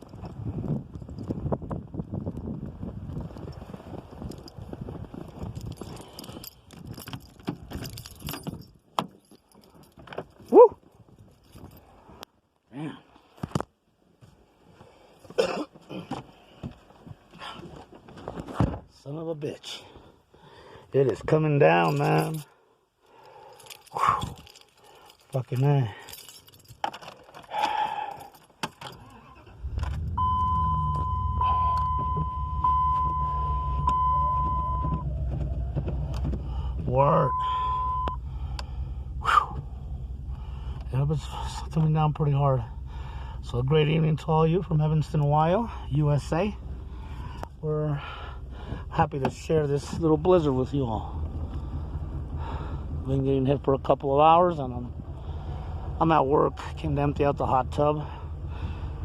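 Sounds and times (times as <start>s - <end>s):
keys jangling: 5.4s - 10.7s, 21.8s - 22.5s, 23.2s - 29.2s
man shouting: 10.5s - 10.8s
car engine starting and idling: 25.4s - 59.0s
high electronic warning tone: 30.1s - 35.1s, 37.2s - 38.2s.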